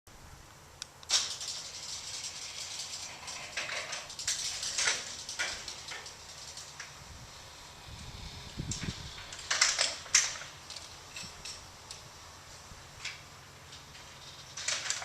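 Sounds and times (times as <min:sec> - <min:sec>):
garage door rattling on track: 0:01.1 - 0:07.0, 0:08.5 - 0:11.7, 0:13.8 - 0:15.0.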